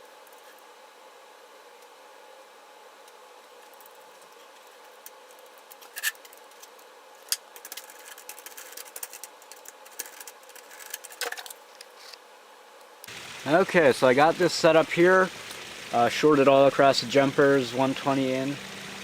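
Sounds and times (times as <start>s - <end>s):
small clicks and rattles of handling: 3.1s - 12.2s
steady faint hiss: 11.6s - 19.0s.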